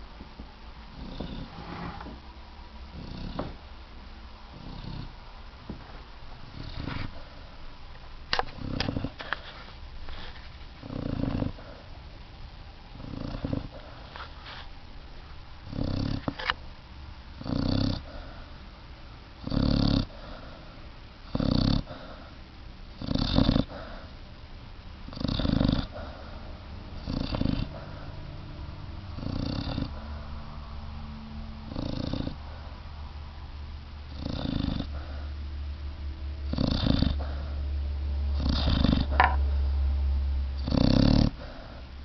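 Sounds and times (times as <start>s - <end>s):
puppy snoring: 0.9s - 2.2s, 2.9s - 3.6s, 4.5s - 5.2s, 6.4s - 7.6s, 8.3s - 12.0s, 12.9s - 14.6s, 15.6s - 16.6s, 17.3s - 18.6s, 19.4s - 24.2s, 25.0s - 30.4s, 31.2s - 32.7s, 34.1s - 35.4s, 36.4s - 37.7s, 38.3s - 39.7s, 40.6s - 42.0s.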